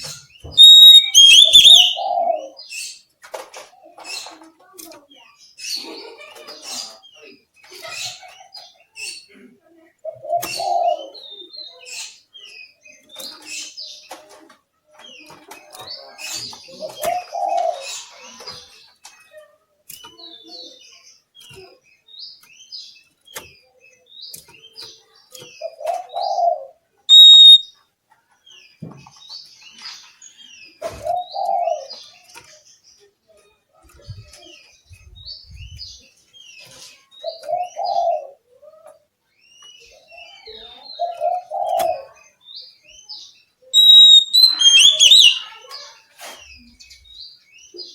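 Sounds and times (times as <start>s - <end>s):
bird singing chirps and whistles: 0.5s - 2.2s, 27.1s - 27.7s, 43.8s - 45.5s
loud pure whistle: 0.6s - 2.0s, 27.1s - 27.6s, 43.8s - 45.4s.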